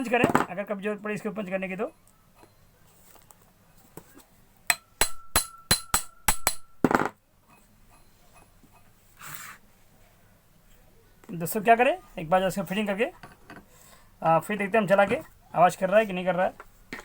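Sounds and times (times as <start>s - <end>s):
hammer striking steel punch: 4.7s - 7.1s.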